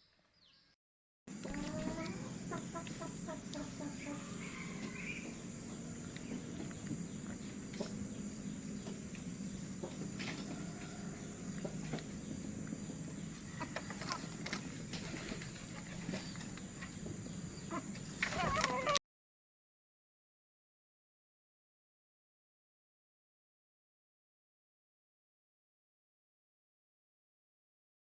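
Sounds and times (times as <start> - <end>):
steady low hum: 1.3 - 18.4
chickens clucking: 1.3 - 19.0.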